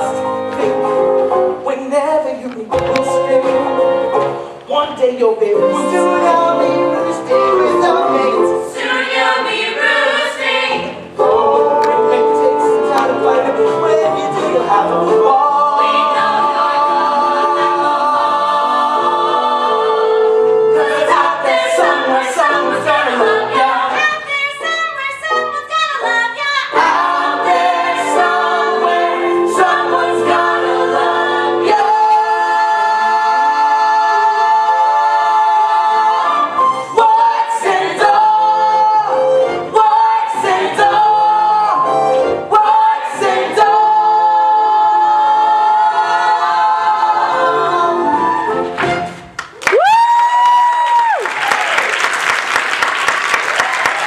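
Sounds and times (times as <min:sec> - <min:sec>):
group of voices singing: 0:05.6 - 0:49.0.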